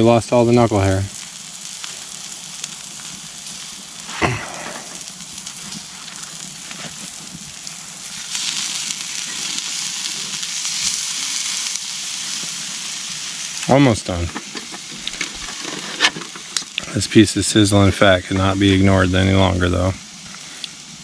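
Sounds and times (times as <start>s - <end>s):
steak sizzling over a campfire: 0.0s - 21.0s
short voice sound: 4.1s - 4.9s.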